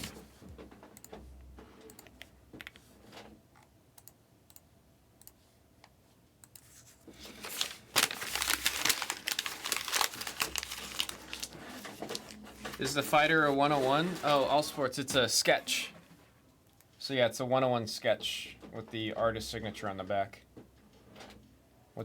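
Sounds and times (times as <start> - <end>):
plastic packaging crinkling: 7.2 - 14.7.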